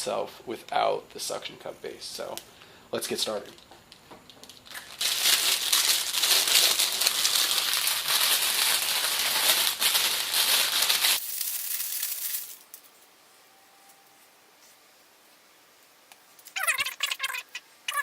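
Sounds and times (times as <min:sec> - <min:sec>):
loud crinkling and rustling: 0:04.2 - 0:12.9.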